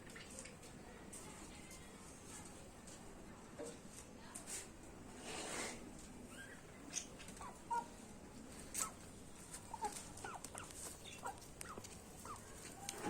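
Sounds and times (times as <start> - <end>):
birds chirping: 8.7 - 13.0.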